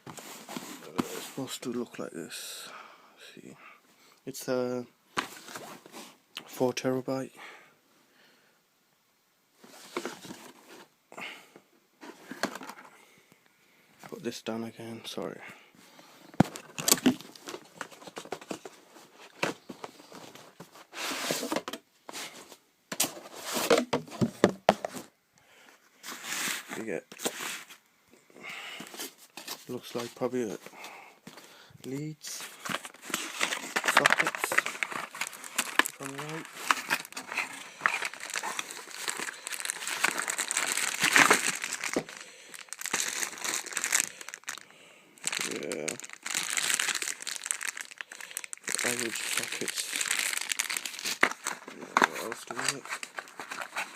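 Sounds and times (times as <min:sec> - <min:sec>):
packaging rustling: 0:16.4 - 0:25.1, 0:28.8 - 0:53.9
packaging clicks and knocks: 0:32.6 - 0:44.6.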